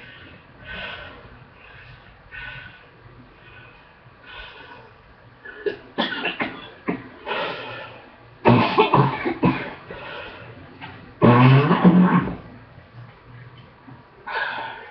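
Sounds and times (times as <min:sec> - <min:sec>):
person coughing: 0:05.5 - 0:07.1, 0:08.5 - 0:09.8.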